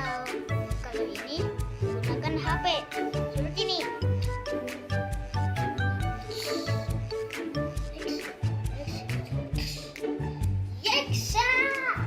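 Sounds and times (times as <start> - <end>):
music with steady beat: 0.0 - 12.0.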